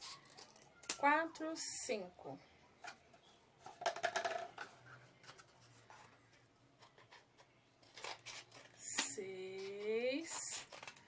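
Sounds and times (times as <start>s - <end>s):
woman's voice: 1.0s - 2.4s, 8.8s - 10.7s
scissors snipping cardboard: 7.9s - 11.0s.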